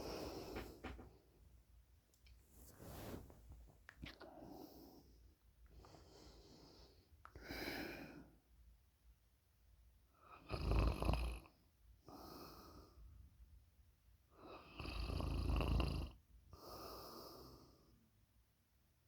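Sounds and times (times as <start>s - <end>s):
breathy breath: 0.0s - 1.1s.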